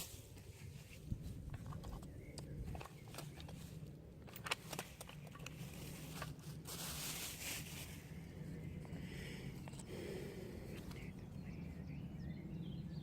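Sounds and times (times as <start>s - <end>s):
rustle: 0.0s - 2.0s, 2.8s - 8.6s
low hum: 0.0s - 13.0s
handling clicks and knocks: 1.4s - 6.4s.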